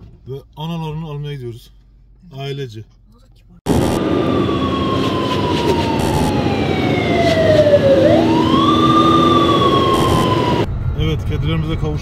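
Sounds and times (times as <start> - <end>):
siren wailing: 3.7 - 10.7.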